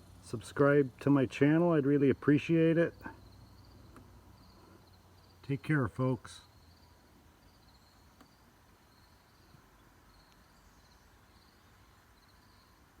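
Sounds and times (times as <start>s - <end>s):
cricket chirping: 2.9s - 5.7s, 6.4s - 13.0s.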